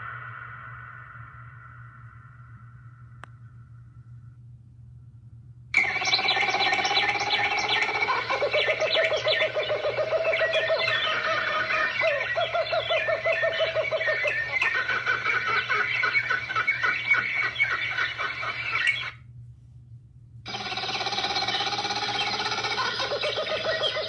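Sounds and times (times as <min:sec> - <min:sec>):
steady animal call: 0:05.8 - 0:19.2, 0:20.5 - 0:24.0
cartoon kookaburra laugh: 0:06.7 - 0:19.1, 0:20.5 - 0:24.0.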